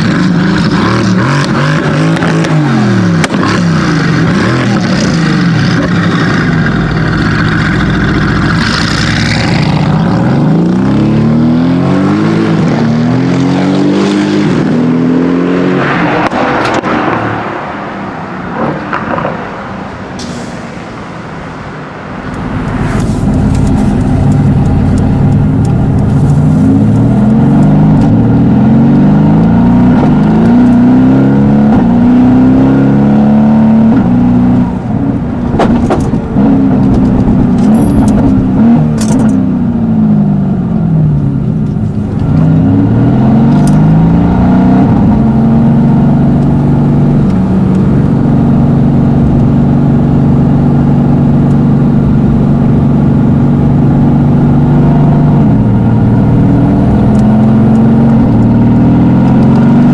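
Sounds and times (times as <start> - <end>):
car engine accelerating hard: 0.0 - 21.2, 22.1 - 59.9.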